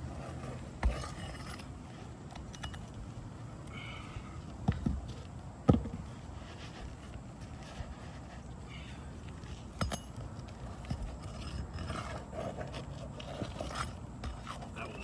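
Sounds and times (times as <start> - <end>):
roofing tools knocking and scraping: 9.4 - 15.0.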